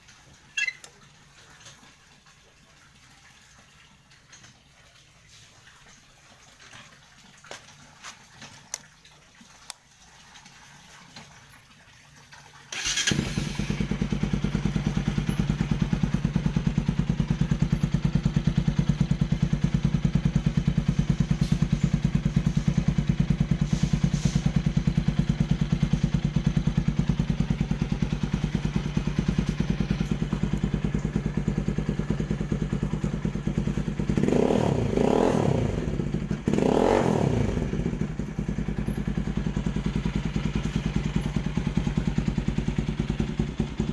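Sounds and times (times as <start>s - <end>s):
motorcycle engine idling and revving: 12.7s - 43.9s.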